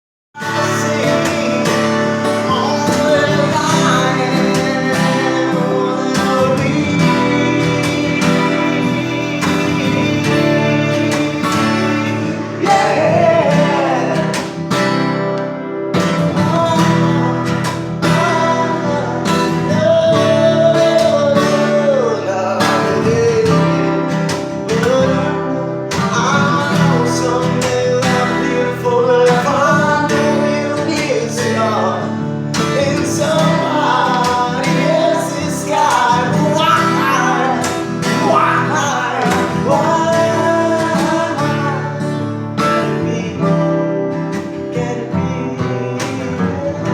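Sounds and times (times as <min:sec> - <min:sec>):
acoustic guitar strumming: 0:00.4 - 0:46.9
person singing: 0:00.4 - 0:46.9.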